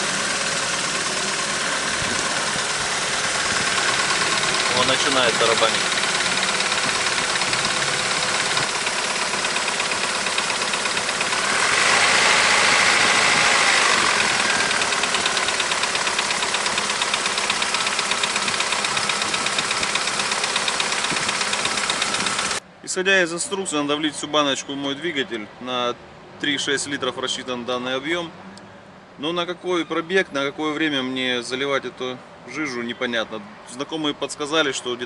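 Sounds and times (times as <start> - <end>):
car engine idling: 0.0 - 22.6.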